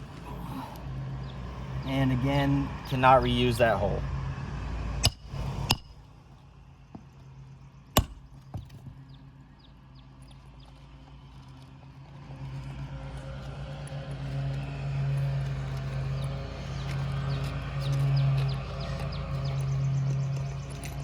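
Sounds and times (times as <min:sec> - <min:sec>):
low engine hum: 0:00.0 - 0:21.0
hammer striking nails: 0:05.0 - 0:06.0, 0:08.0 - 0:08.8.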